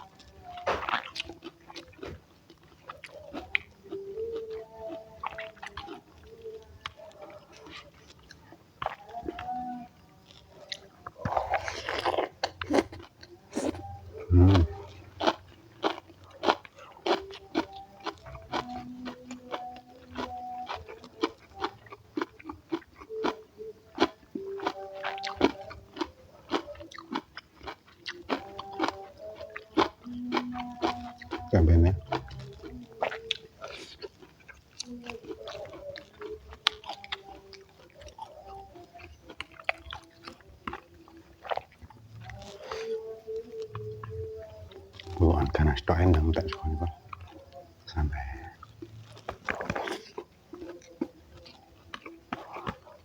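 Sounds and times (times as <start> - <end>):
mouth chewing and crunching food: 0.0 - 53.0
wet mouth sounds: 8.8 - 23.4, 26.5 - 53.0.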